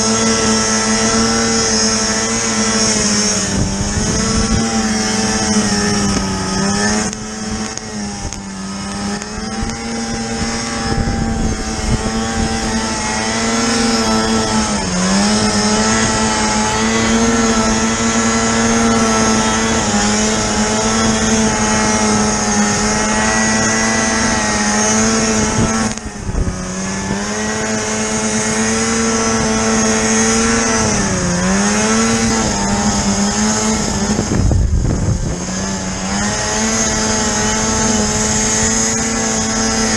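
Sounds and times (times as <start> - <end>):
snowmobile engine revving: 0.0 - 39.9.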